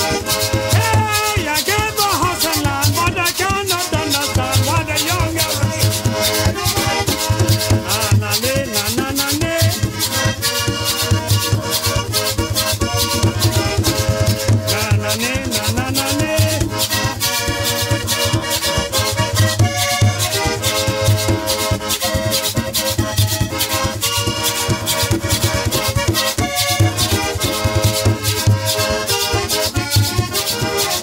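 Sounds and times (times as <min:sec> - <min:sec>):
background music with busy beat: 0:00.0 - 0:31.0.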